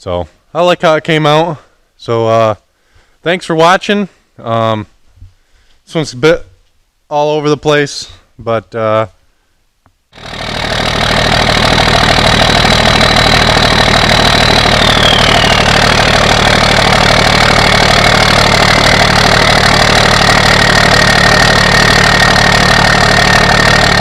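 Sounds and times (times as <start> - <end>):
engine idling loudly: 10.2 - 24.0
high whine sliding down: 10.2 - 24.0.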